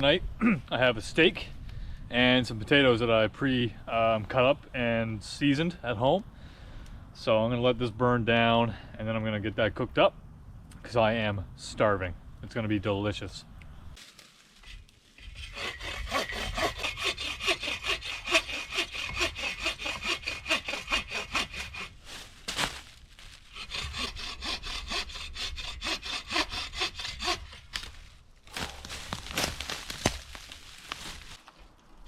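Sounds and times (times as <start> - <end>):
hand saw cutting wood: 15.2 - 22.1, 23.5 - 28.0.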